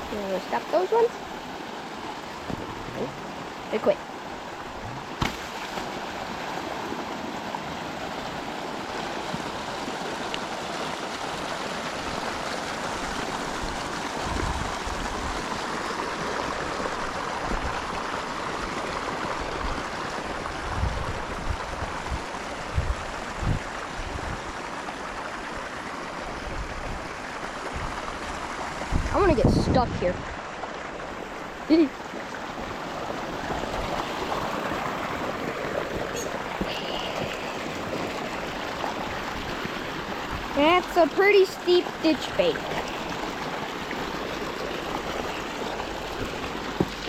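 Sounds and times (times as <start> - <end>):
water rushing: 0.0 - 47.0.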